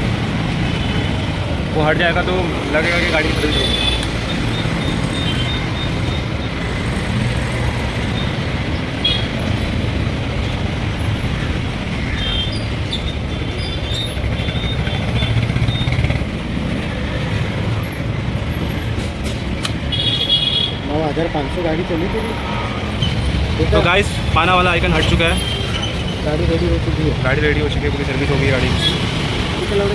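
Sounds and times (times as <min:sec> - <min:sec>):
road traffic rumble: 0:00.0 - 0:29.9.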